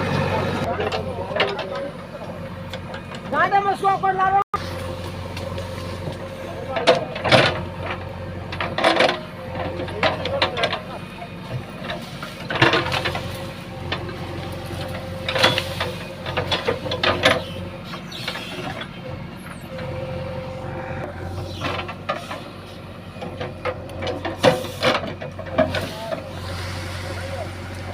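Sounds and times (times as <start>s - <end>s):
diesel engine running: 0.0s - 27.9s
metallic clanking and rattling: 4.8s - 19.8s, 21.1s - 26.5s.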